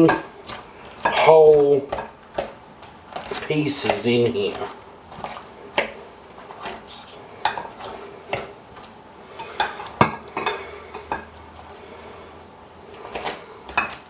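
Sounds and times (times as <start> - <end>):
knives clinking against bowl: 6.9 - 7.2.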